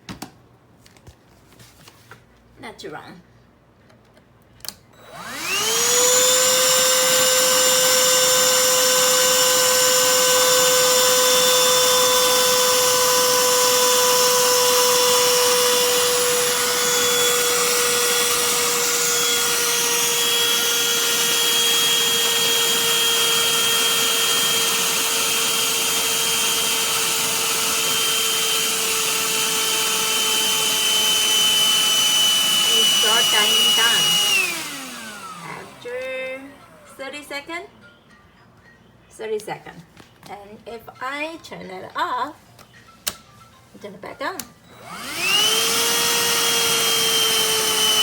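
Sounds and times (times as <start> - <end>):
handheld vacuum motor whine: 5.0 - 36.9, 44.7 - 48.0.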